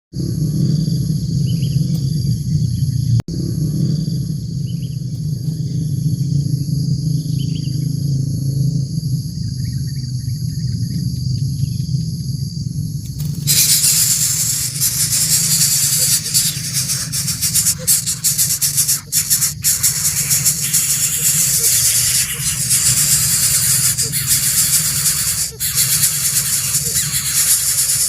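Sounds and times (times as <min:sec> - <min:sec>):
bird chirps: 0:13.2 - 0:28.0
loud hiss: 0:13.2 - 0:28.0
high-pitched drone: 0:13.5 - 0:28.0.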